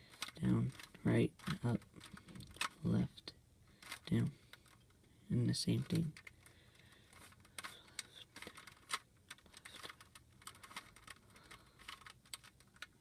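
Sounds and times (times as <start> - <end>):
plastic puzzle cube clicking: 0.0 - 2.9, 5.8 - 13.0.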